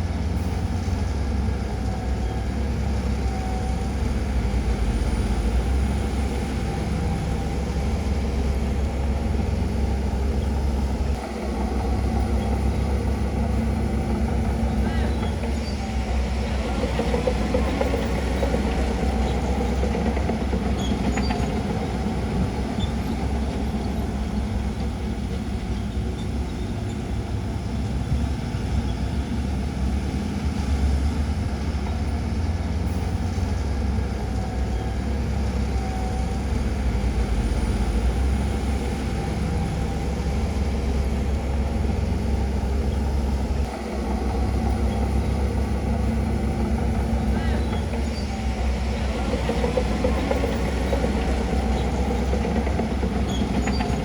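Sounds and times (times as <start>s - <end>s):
heavy diesel machinery rumbling: 0.0s - 54.0s.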